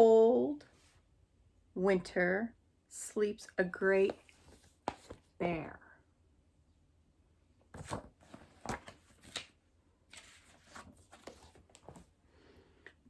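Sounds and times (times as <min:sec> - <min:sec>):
paper rustling: 0:04.1 - 0:05.3, 0:07.7 - 0:12.1.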